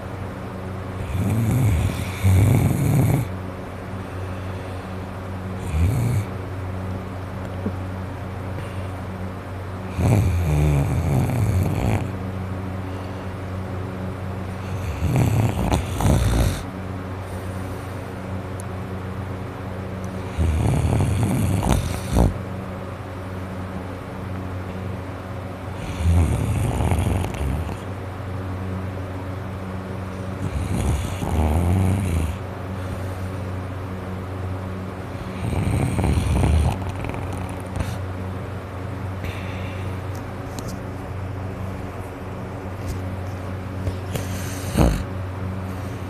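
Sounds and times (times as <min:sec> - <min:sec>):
man snoring: 0:01.0 - 0:03.4, 0:05.6 - 0:06.4, 0:09.9 - 0:12.2, 0:14.5 - 0:16.7, 0:20.1 - 0:22.4, 0:25.7 - 0:27.9, 0:30.4 - 0:32.4, 0:35.1 - 0:38.0, 0:43.8 - 0:45.1.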